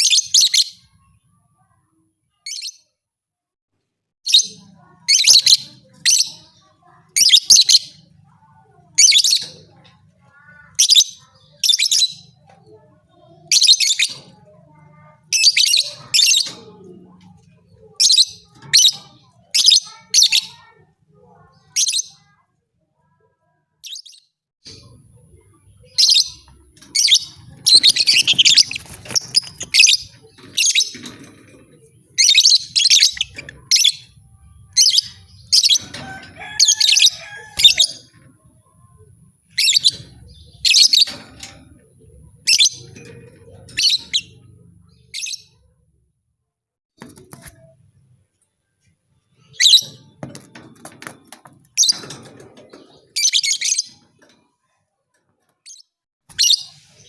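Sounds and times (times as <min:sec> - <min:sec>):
lovebird chirping: 0:25.8 - 0:31.1.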